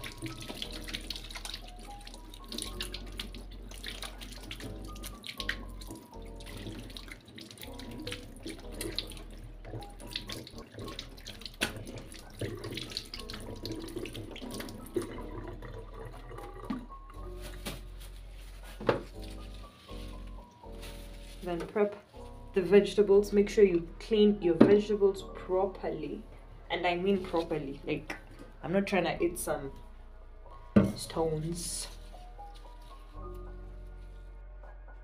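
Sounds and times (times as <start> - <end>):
tap running at sink: 0.0 - 16.9
water splashing: 0.0 - 18.0
hands washing: 0.0 - 22.6
background music: 0.0 - 35.0.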